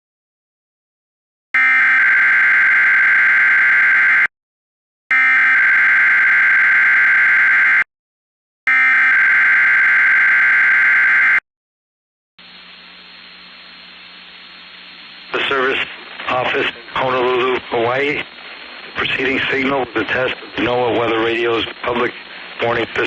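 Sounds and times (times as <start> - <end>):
faint radio static hiss: 12.4 - 23.0.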